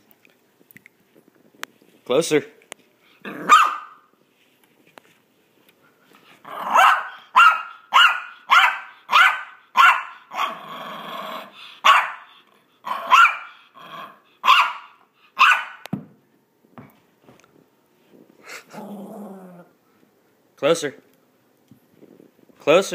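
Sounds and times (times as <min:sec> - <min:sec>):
dog growling: 0:03.2 - 0:03.5, 0:10.3 - 0:11.6, 0:12.8 - 0:14.2, 0:18.5 - 0:19.8
small dog play barking: 0:03.2 - 0:04.1, 0:06.5 - 0:10.7, 0:11.8 - 0:13.6, 0:14.4 - 0:15.9.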